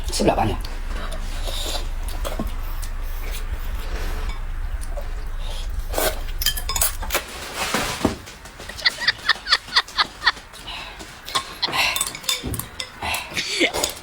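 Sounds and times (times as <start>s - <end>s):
steady low hum: 0.0s - 14.0s
dishes and cutlery clinking: 11.0s - 14.0s.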